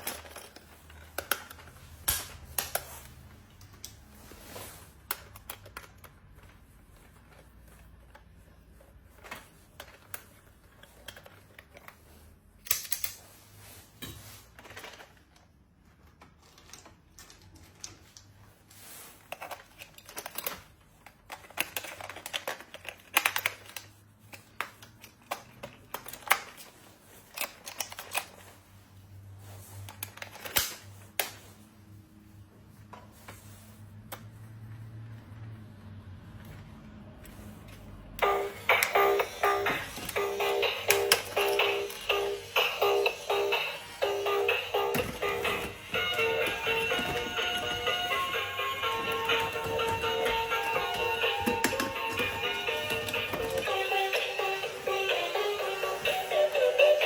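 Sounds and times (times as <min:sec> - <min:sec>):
plastic parts clicking and tapping: 0:00.0 - 0:04.0, 0:05.0 - 0:08.4, 0:09.1 - 0:12.0, 0:12.6 - 0:13.2, 0:19.3 - 0:28.4, 0:38.2 - 0:42.2, 0:43.0 - 0:54.4.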